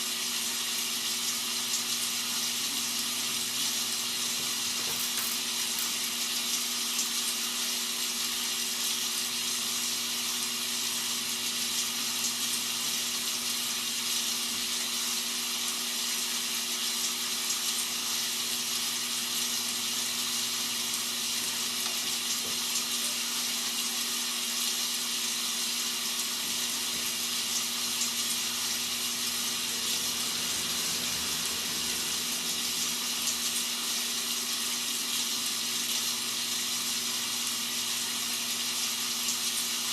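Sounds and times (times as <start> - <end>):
rain hiss: 24.9 - 39.9.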